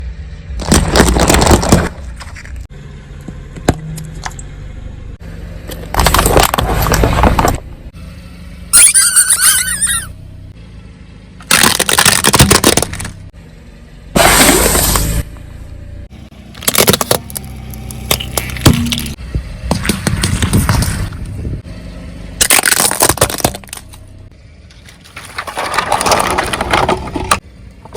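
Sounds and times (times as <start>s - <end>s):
car engine hum: 0.0s - 27.9s
objects crunching under tyres: 0.5s - 4.6s, 5.5s - 7.9s, 11.4s - 13.4s, 14.1s - 21.6s, 22.3s - 27.9s
wavering squeak: 8.7s - 10.2s.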